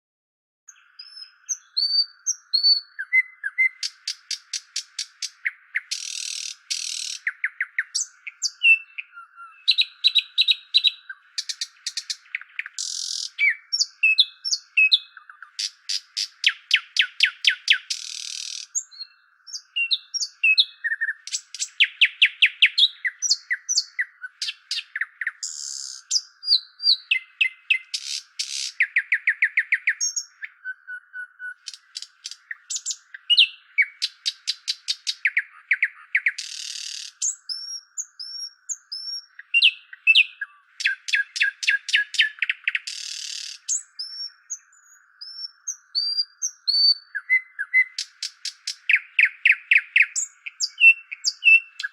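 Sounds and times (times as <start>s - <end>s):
wild birds singing: 0.7s - 51.9s.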